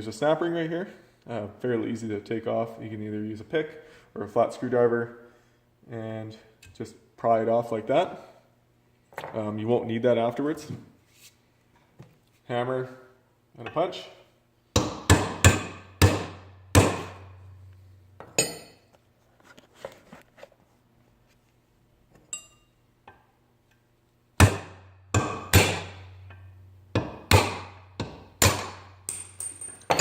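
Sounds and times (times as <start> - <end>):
hammer striking metal punch: 14.8 - 17.4, 18.2 - 18.8, 24.4 - 30.0.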